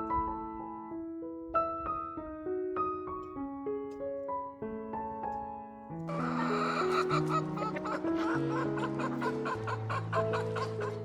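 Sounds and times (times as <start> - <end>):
gentle piano music: 0.0 - 11.0
chickens clucking: 6.1 - 11.0.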